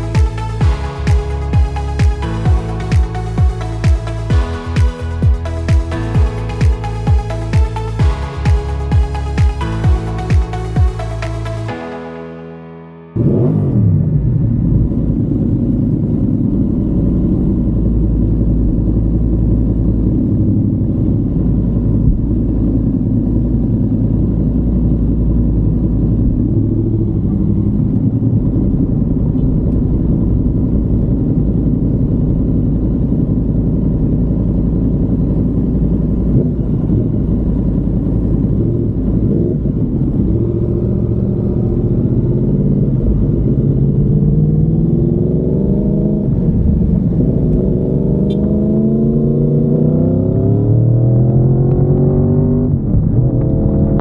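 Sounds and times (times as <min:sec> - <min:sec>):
motorcycle engine revving: 0:35.1 - 0:54.0.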